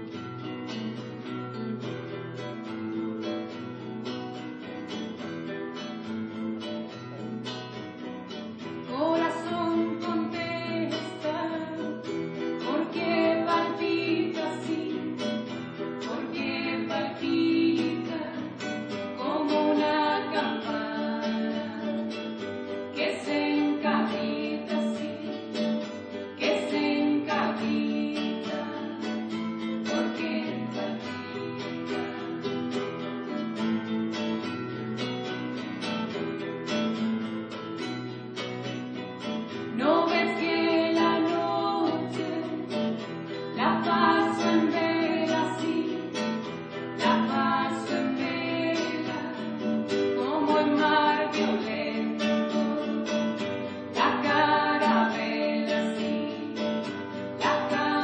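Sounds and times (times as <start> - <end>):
strummed acoustic guitar: 0.0 - 58.0
person singing: 8.8 - 32.4, 39.7 - 58.0.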